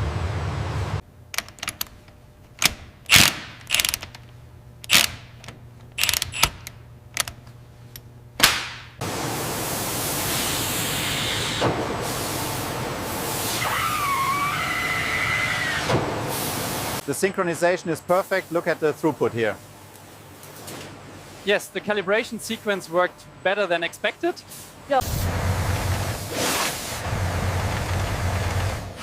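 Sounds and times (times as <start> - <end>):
mechanical clicks and clanks: 1.3 - 8.1.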